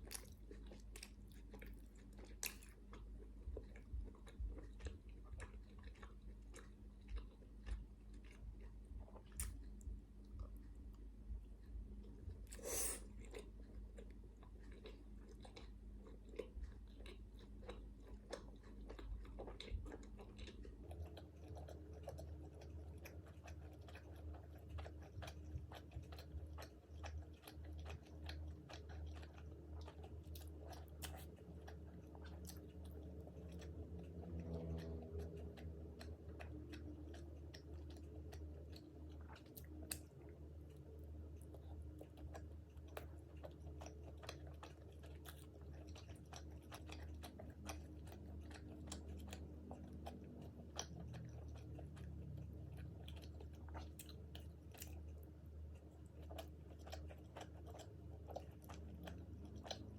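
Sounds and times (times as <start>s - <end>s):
crunchy food chewing: 0.0s - 59.9s
wet mouth sounds: 12.3s - 13.6s.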